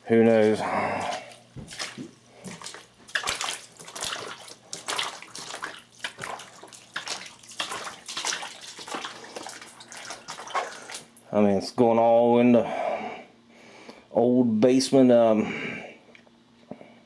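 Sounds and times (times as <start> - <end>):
floodwater sloshing and splashing: 0.3 - 11.2.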